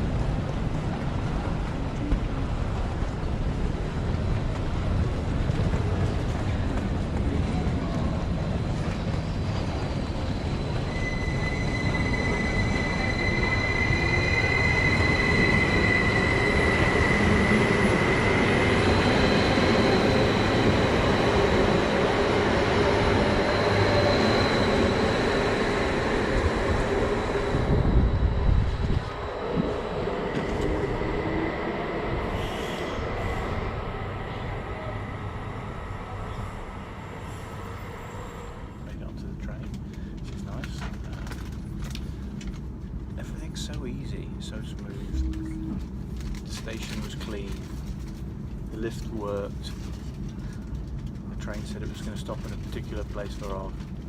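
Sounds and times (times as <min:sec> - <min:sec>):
train rumble: 0:00.0 - 0:54.0
brake squeal: 0:09.0 - 0:20.6.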